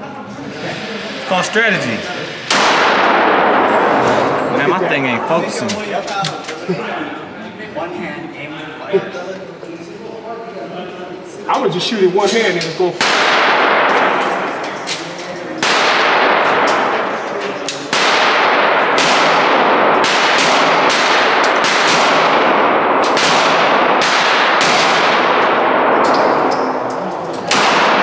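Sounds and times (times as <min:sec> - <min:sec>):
pistol shots echoing indoors: 0:13.0 - 0:15.0, 0:15.6 - 0:17.2, 0:17.9 - 0:28.0.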